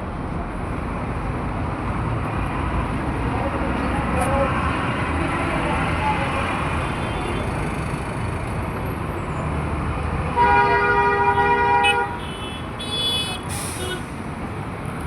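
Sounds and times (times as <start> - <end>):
road traffic engines: 0.0 - 15.0
vehicle horn blaring: 10.4 - 14.1.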